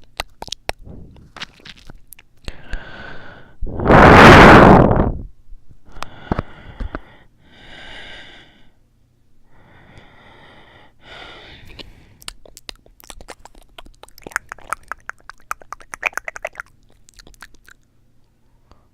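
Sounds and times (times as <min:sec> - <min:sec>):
person breathing heavily: 0:02.5 - 0:04.0, 0:05.9 - 0:08.8, 0:09.4 - 0:12.3.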